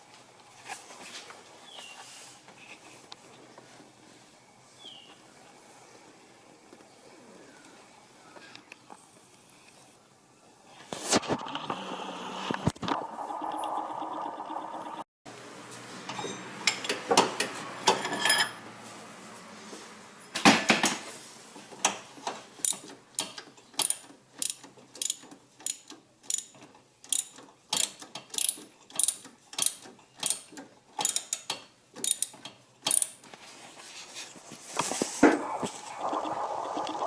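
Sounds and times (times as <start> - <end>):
ratchet wrench clicking: 22.6 - 33.2.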